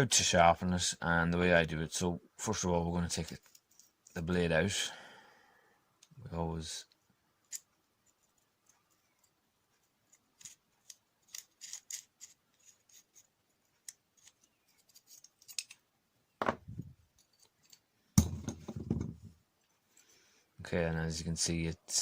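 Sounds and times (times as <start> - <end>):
metallic clicks and scrapes: 3.3 - 4.2, 7.4 - 9.4, 10.0 - 15.8, 17.1 - 17.9.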